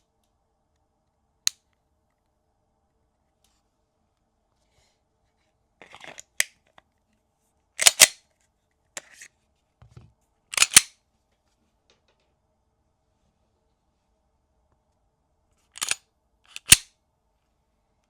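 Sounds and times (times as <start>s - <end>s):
pistol metallic clicks and clacks: 7.8s - 8.2s, 10.5s - 10.9s, 15.8s - 16.9s.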